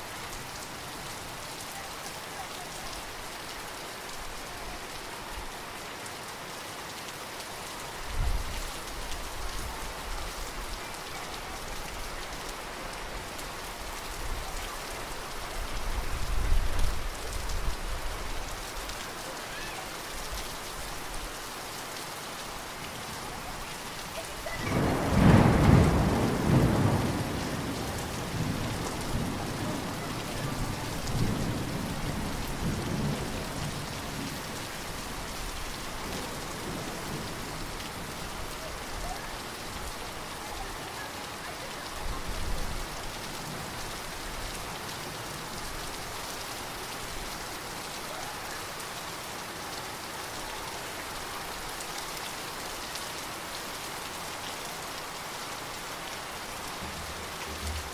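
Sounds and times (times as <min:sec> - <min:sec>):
steady rainfall: 0:00.0 - 0:57.9
thunder rumbling: 0:24.6 - 0:34.3, 0:56.8 - 0:57.9.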